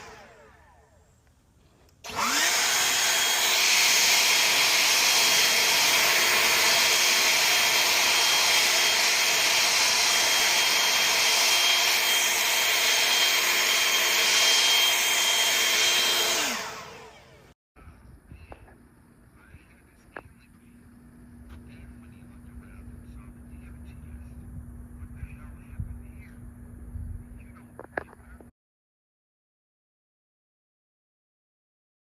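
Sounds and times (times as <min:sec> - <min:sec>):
electric lawn mower whine: 0:00.0 - 0:17.6.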